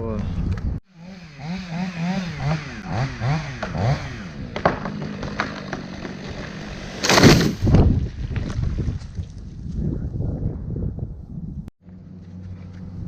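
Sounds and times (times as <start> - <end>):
chainsaw revving and idling: 0.9 - 7.4.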